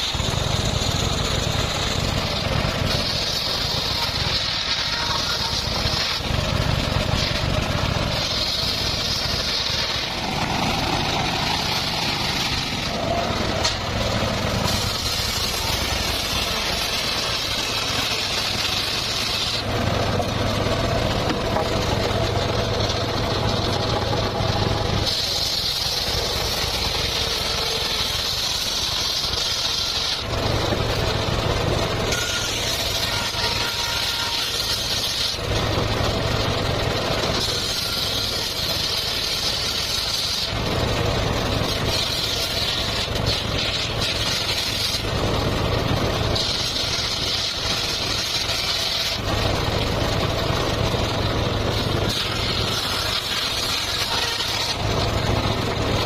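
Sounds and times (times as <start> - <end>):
circular saw cutting: 0.0 - 56.0.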